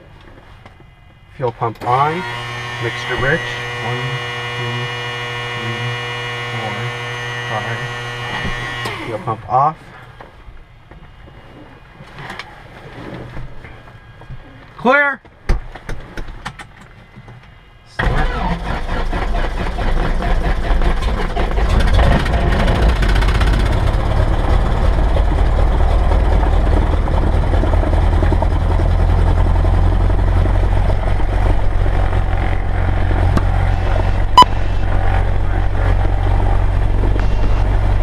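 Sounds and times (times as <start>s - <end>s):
aircraft engine starting and running: 1.7s - 10.3s, 16.4s - 38.0s.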